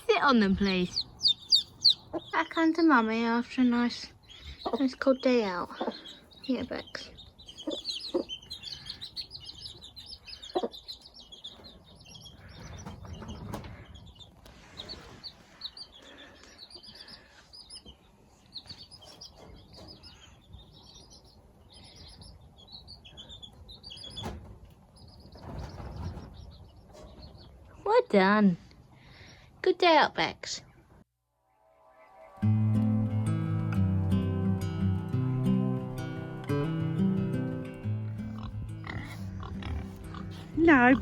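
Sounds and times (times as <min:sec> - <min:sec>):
chicks peeping: 0:00.0 - 0:27.8, 0:38.1 - 0:41.0.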